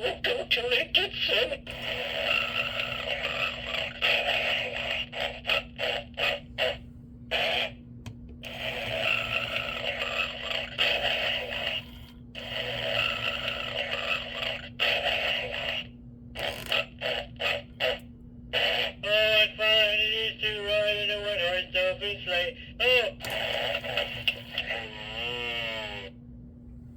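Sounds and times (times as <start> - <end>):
faint steady hum: 0.0 - 26.9
toy figure snoring: 1.7 - 6.4, 8.5 - 18.0, 23.2 - 26.1.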